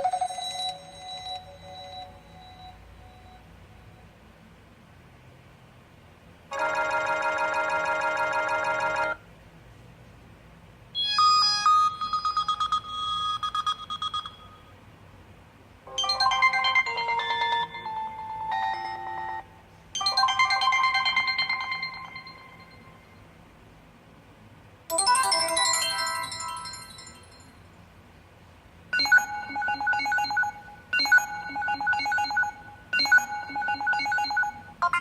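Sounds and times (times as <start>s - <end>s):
phone ringtone melodies: 0.0s - 3.4s, 6.5s - 9.2s, 11.0s - 14.7s, 15.9s - 23.1s, 24.9s - 27.5s, 28.9s - 35.0s.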